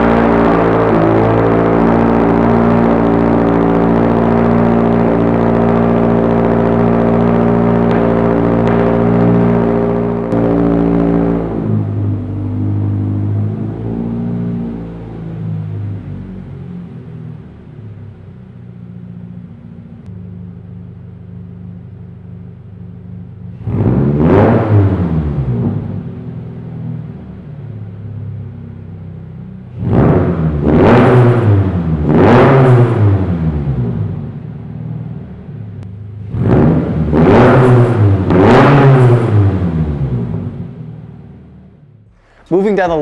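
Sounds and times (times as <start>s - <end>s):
car engine running steadily: 0.0s - 24.3s.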